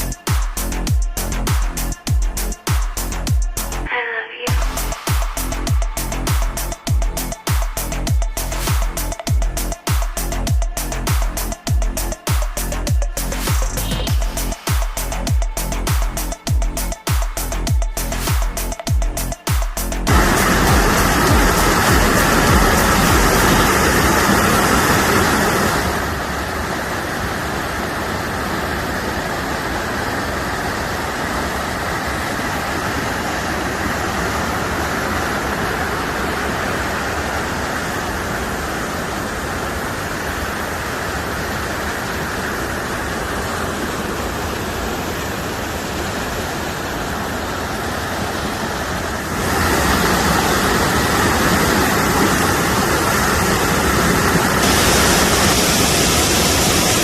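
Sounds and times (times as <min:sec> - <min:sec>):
waterfall rushing: 0:11.0 - 0:17.6, 0:18.2 - 0:57.0.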